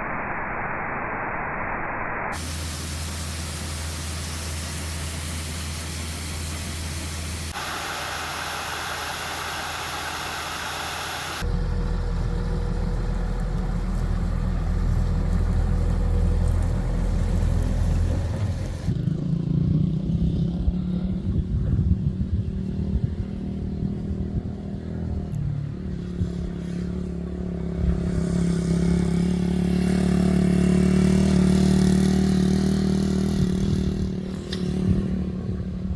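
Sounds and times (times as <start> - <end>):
hiss: 2.4 - 11.5
combine harvester engine running: 2.4 - 19.0.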